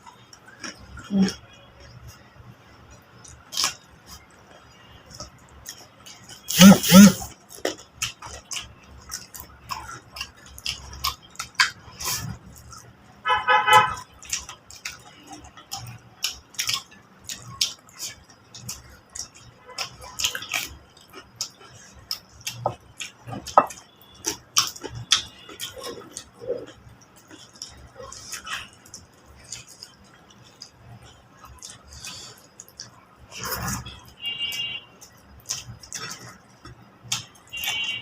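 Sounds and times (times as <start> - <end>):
chewing and lip smacks: 0.0 - 2.3, 2.9 - 13.2, 14.0 - 34.2, 35.0 - 37.8.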